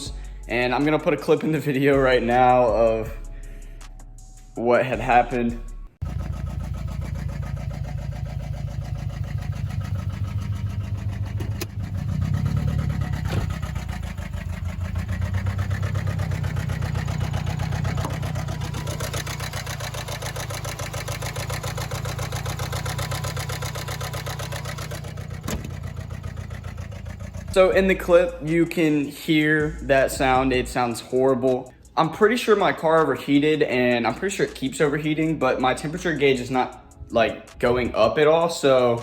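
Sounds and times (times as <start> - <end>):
engine misfiring roughly: 6.0 - 28.5.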